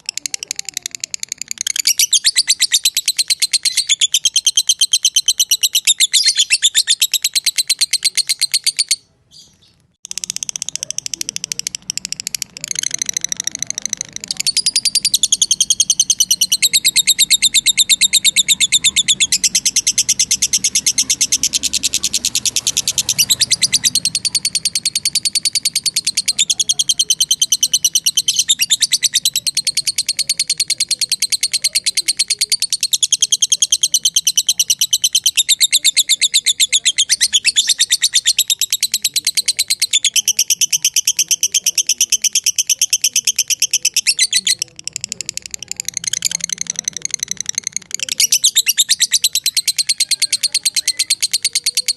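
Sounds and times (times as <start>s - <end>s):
lovebird high-pitched trill: 10.1s - 44.5s, 46.0s - 51.9s.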